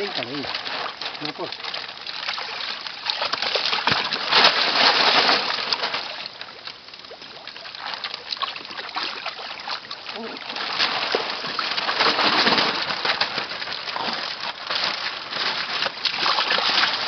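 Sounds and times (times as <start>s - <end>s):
water splashing and sloshing: 0.0s - 17.0s.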